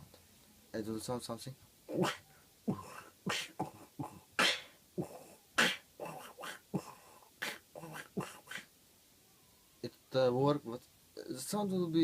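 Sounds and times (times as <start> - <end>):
beatboxing mouth sounds: 1.9 - 8.7.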